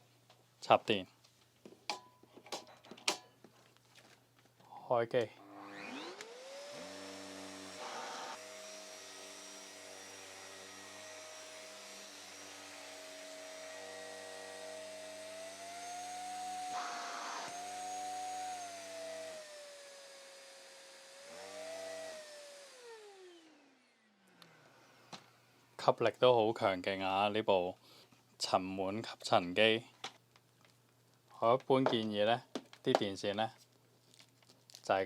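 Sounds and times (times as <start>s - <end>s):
vacuum cleaner motor whine: 5.4s - 24.9s.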